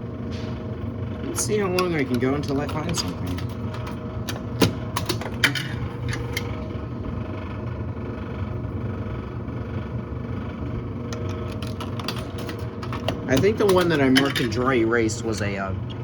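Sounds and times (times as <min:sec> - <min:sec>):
low machine hum: 0:00.0 - 0:16.0
coins clinking in vending machine: 0:01.3 - 0:06.6, 0:11.2 - 0:14.9.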